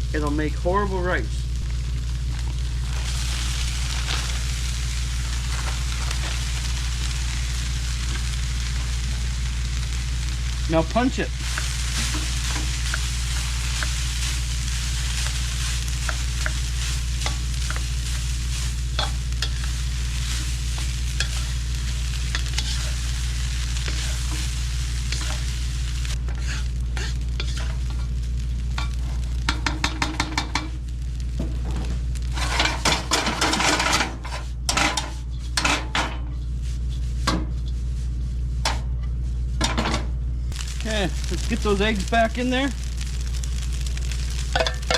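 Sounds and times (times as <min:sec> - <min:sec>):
rice sizzling in a pan: 0:00.0 - 0:39.3, 0:40.5 - 0:44.9
steady low hum: 0:00.0 - 0:44.9
spatula scraping a pan: 0:15.1 - 0:23.2, 0:23.8 - 0:25.5, 0:26.3 - 0:28.0.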